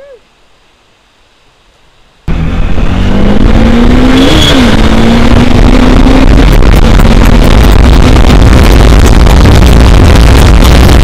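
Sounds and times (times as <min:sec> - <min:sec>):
motorcycle engine: 0:02.3 - 0:11.0
wind noise: 0:02.3 - 0:11.0.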